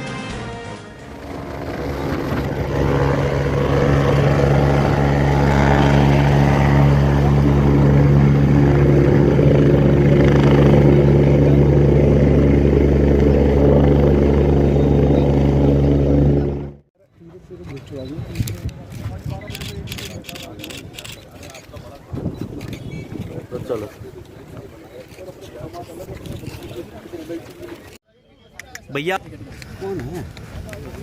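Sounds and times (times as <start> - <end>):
loud engine drone: 0.6 - 16.8.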